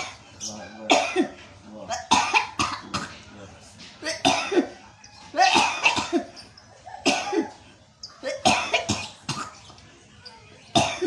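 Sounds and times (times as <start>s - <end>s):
person coughing hard: 0.9s - 3.2s, 4.0s - 4.8s, 5.4s - 6.4s, 7.0s - 7.6s, 8.2s - 9.6s, 10.7s - 11.0s.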